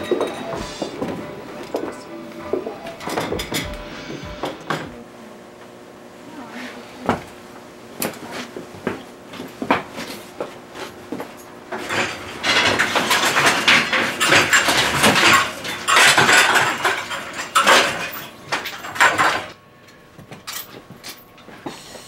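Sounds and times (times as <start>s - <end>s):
dishes and cutlery clattering: 0.0s - 5.0s, 11.7s - 19.6s.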